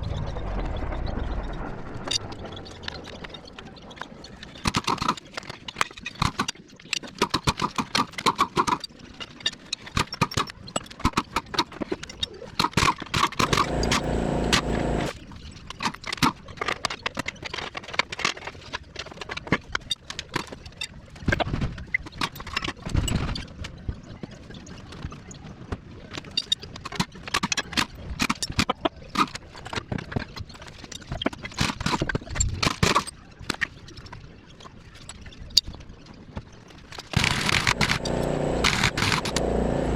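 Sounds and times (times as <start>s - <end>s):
power tool running: 13.4s - 15.1s, 37.2s - 39.9s.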